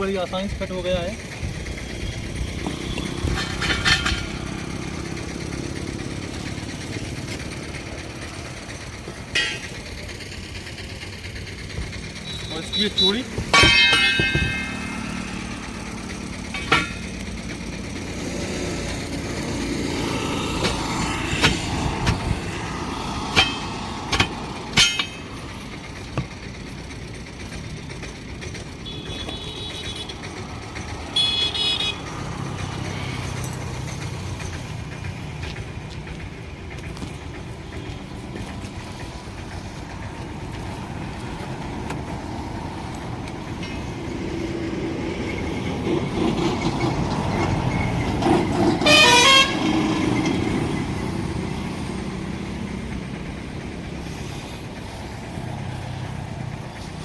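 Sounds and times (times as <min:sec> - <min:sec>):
road traffic: 0:00.0 - 0:57.0
vehicle horn toots: 0:12.2 - 0:14.9, 0:28.8 - 0:30.2, 0:31.1 - 0:32.1, 0:48.8 - 0:50.0.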